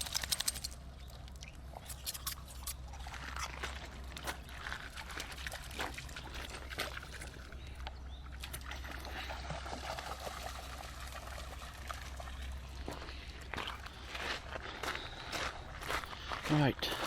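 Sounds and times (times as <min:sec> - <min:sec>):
river water trickling and splashing: 0:03.7 - 0:13.6.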